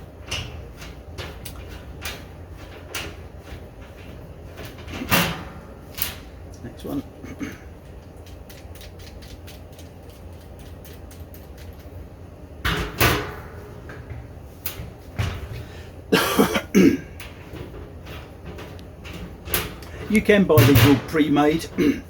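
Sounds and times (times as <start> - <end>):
harsh metal crunches: 16.1 - 22.0.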